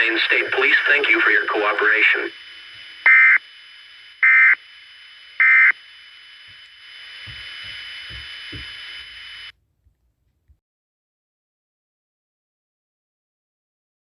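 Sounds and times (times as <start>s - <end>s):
low thumps: 7.3s - 8.8s.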